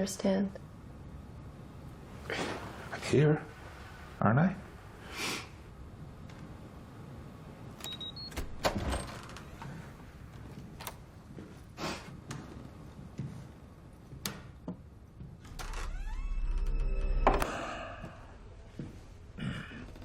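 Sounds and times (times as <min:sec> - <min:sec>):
faint low rumble: 0:15.0 - 0:20.0
low hum: 0:15.4 - 0:20.0.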